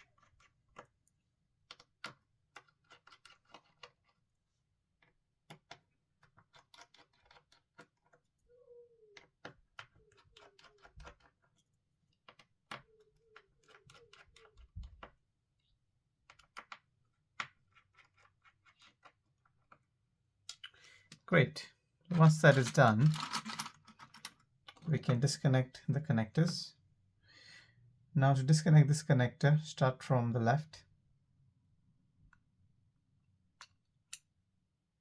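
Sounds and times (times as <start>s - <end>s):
screwdriver bit squeaking: 8.4s - 11.4s, 12.8s - 14.7s.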